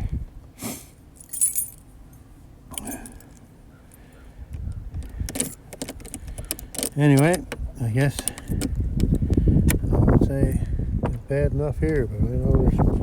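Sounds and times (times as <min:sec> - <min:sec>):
keys jingling: 0:01.2 - 0:01.8, 0:05.3 - 0:07.4
handling clicks: 0:05.0 - 0:09.2.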